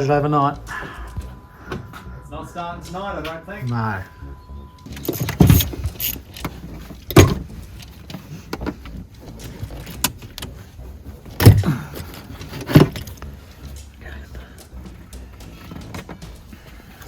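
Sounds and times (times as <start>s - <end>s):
starter motor cranking: 4.8s - 17.0s.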